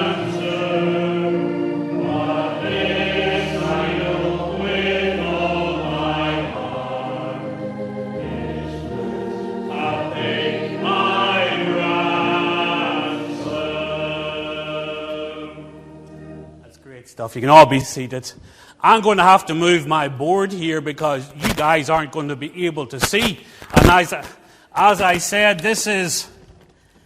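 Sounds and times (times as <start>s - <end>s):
congregation singing a hymn: 0.0s - 16.6s
instrumental accompaniment: 0.0s - 17.0s.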